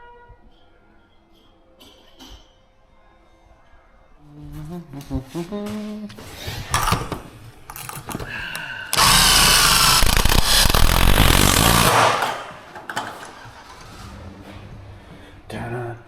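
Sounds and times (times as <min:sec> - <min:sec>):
handheld power tool running: 0:08.9 - 0:12.7
knocks and clanks of handling: 0:11.9 - 0:14.0.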